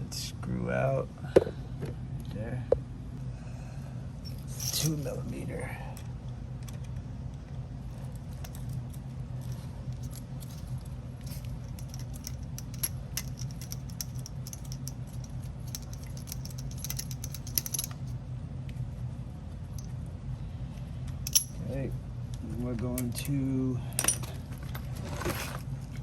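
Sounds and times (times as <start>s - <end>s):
steady low hum: 0.0s - 26.0s
metal tool clicking and rattling: 10.0s - 18.1s, 21.3s - 21.6s.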